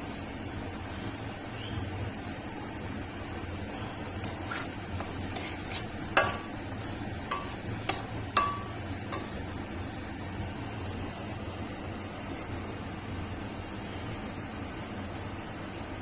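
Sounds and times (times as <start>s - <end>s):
steady hiss: 0.0s - 16.0s
metal spoon clinking in pan: 5.0s - 9.4s.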